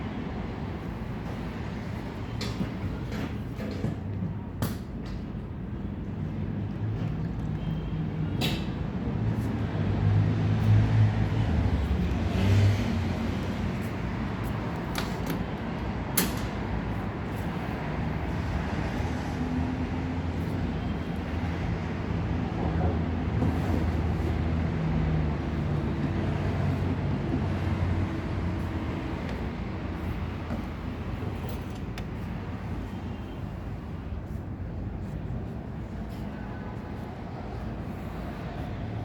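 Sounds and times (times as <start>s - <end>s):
vehicle engines humming: 9.4s - 34.0s.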